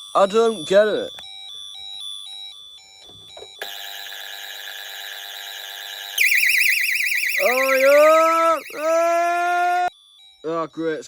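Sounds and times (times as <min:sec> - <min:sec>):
loud fast-warbling siren: 0:04.8 - 0:09.9
steady multi-tone sound: 0:05.0 - 0:09.3
alarm beeping short tones: 0:06.2 - 0:09.2.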